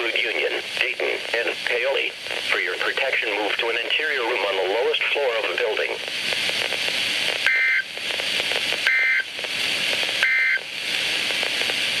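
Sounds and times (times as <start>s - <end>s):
static hiss: 0.0s - 12.0s
shrill two-tone data bursts: 7.4s - 7.8s, 8.8s - 9.3s, 10.2s - 10.6s.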